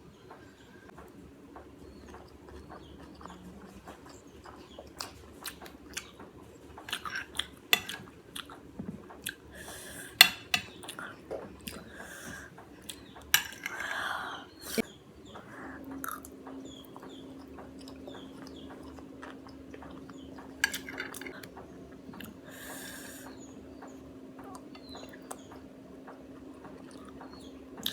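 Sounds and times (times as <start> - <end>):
chewing: 0.3 - 27.9
cutlery scraping on a plate: 7.0 - 8.1, 10.1 - 10.9, 13.3 - 13.8, 20.6 - 21.4.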